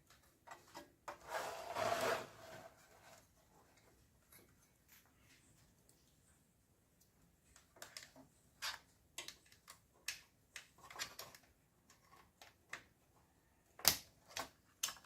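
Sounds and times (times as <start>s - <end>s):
clicks and scrapes of plastic and metal: 7.5s - 13.0s.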